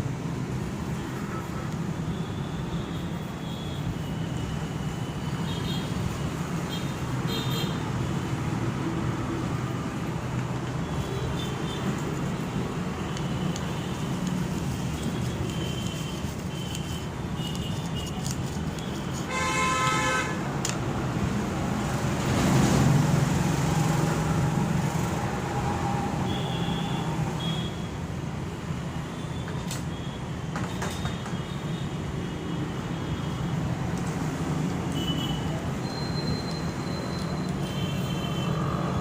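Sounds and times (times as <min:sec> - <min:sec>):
road traffic rumbling: 0:00.0 - 0:39.0
vehicle horn: 0:19.3 - 0:20.4
loud vehicle passing: 0:21.0 - 0:27.4, 0:38.4 - 0:39.0.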